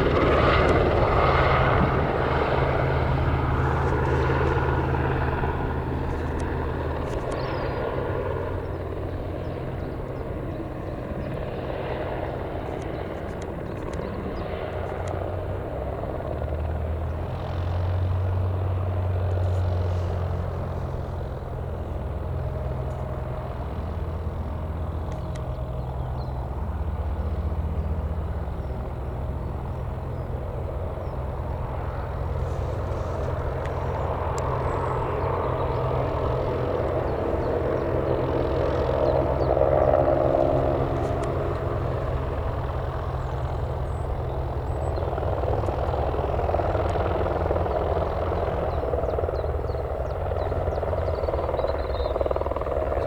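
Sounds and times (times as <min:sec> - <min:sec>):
steady low rumble: 0:00.0 - 0:52.9
aircraft engine noise: 0:00.0 - 0:53.0
faint clicks: 0:06.1 - 0:07.6, 0:12.6 - 0:15.2, 0:25.0 - 0:25.5, 0:40.4 - 0:41.8.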